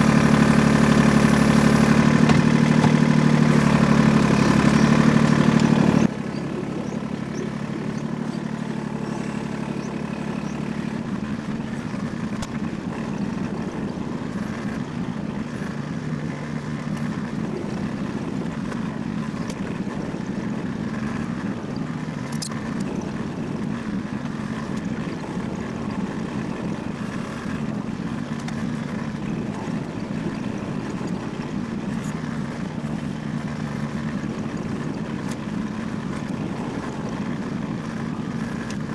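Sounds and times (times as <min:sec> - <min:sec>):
engine running: 0:00.0 - 0:38.9.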